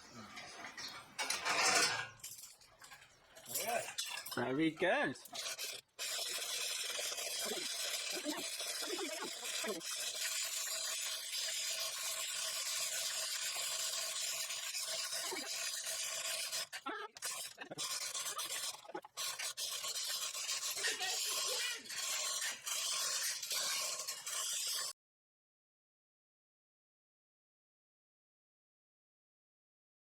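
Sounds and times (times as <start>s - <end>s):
rasping rubbing noise: 0.0s - 2.1s, 5.2s - 24.9s.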